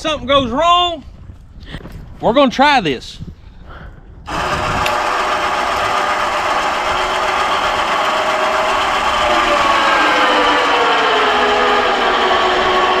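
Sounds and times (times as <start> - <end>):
electric winch whining: 4.3 - 13.0.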